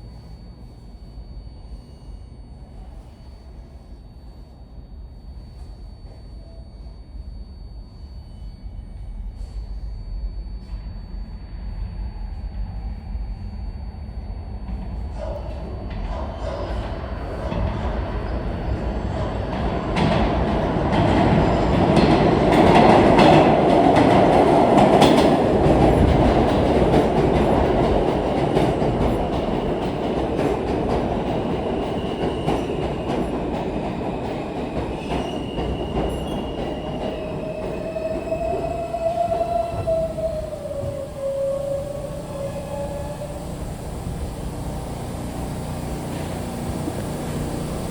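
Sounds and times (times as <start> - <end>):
subway train wheels clacking: 13.8 - 47.9.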